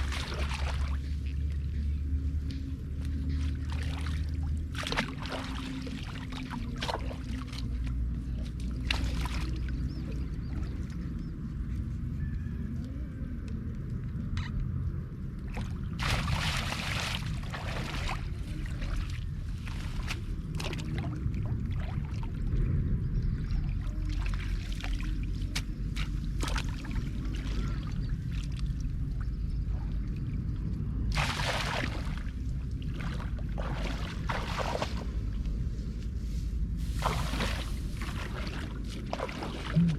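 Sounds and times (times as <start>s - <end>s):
steady low rumble: 0.0s - 39.9s
water splashing and pouring: 16.0s - 22.3s, 31.1s - 35.2s, 36.8s - 39.9s.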